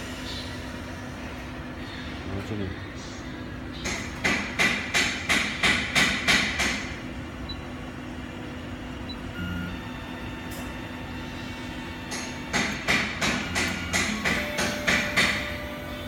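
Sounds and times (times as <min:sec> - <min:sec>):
low background hum: 0:00.0 - 0:16.0
sharp knocks: 0:03.8 - 0:06.9, 0:12.1 - 0:15.5.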